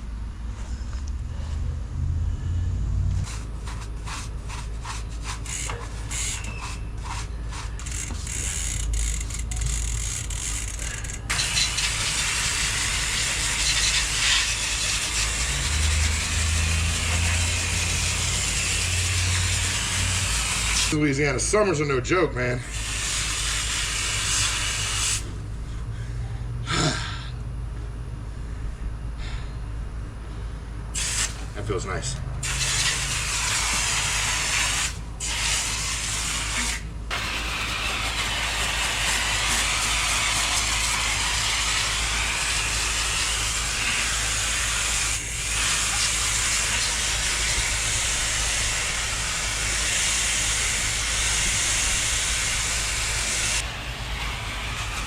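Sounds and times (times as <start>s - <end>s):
water spraying from a hose: 10.6s - 21.0s, 22.7s - 25.3s, 31.0s - 31.5s, 32.4s - 55.0s.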